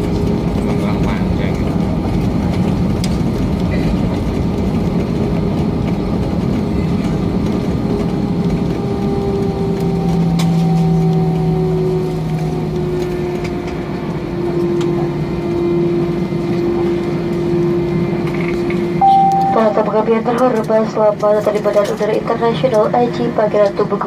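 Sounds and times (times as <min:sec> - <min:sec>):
wheels rolling on runway: 0:00.0 - 0:17.1
jet engines winding down: 0:00.0 - 0:24.0.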